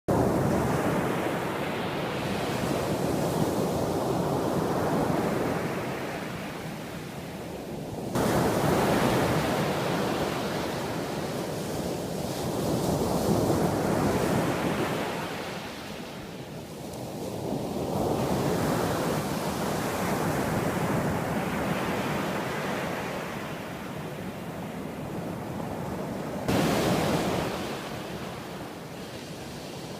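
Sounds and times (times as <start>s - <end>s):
surf washing onto beach: 8.1s - 23.8s, 26.1s - 29.9s.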